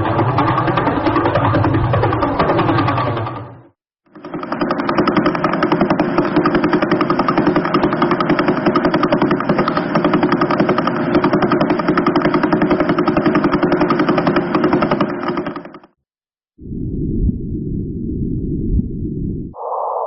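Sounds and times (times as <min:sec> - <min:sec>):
rapidly pulsing buzzing drone: 0:04.1 - 0:15.9.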